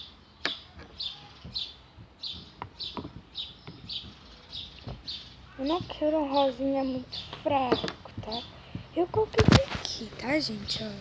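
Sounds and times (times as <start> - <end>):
bird chirping: 0.0 - 11.0
sharp clicks and knocks: 0.4 - 6.2, 7.3 - 10.0.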